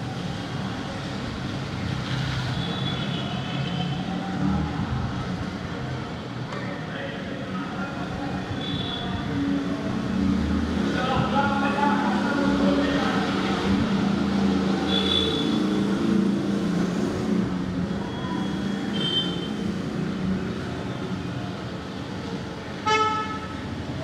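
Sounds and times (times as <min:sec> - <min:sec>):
road noise: 0:00.0 - 0:24.0
traffic engines humming: 0:00.0 - 0:24.0
vehicle horn toots: 0:14.9 - 0:15.6, 0:22.8 - 0:23.5.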